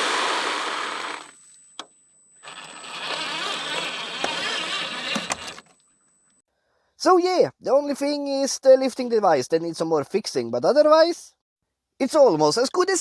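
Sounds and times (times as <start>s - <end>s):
small electric motor and gearbox: 0.0s - 5.8s
clicks: 3.1s - 6.4s.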